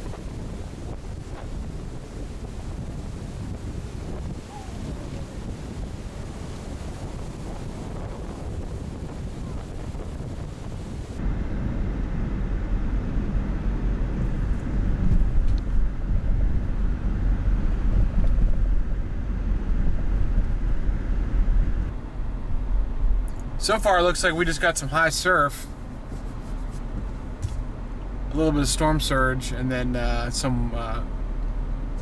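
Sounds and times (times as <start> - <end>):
wind on microphone: 0.0 - 23.6
car driving rumble: 0.0 - 32.0.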